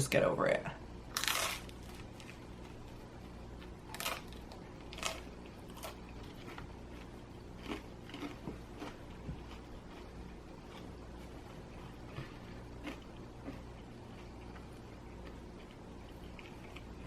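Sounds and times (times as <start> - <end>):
faint steady hum: 0.0 - 17.0
chewing crispy crust: 1.1 - 17.0.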